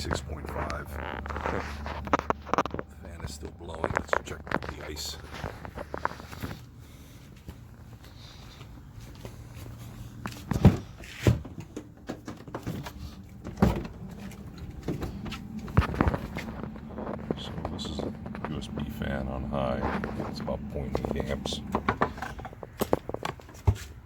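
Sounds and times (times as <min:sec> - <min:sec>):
small fan humming: 0:04.8 - 0:23.1.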